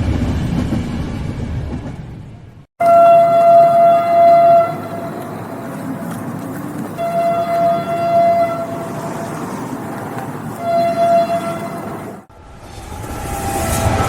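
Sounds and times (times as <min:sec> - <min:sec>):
running train rumble: 0:00.0 - 0:14.0
train horn blasts: 0:02.8 - 0:05.4, 0:07.0 - 0:09.5, 0:10.6 - 0:12.1.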